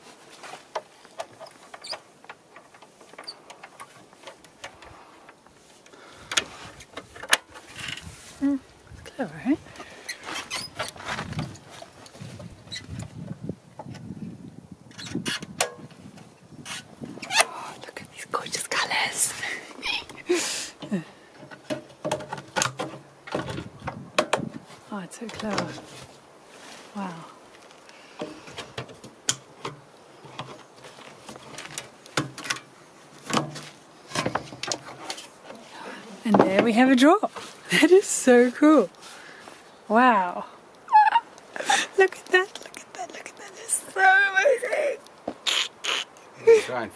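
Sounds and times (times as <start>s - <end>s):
rustling: 0.0s - 13.4s, 15.9s - 46.7s
furniture parts clicking and knocking: 20.8s - 24.6s.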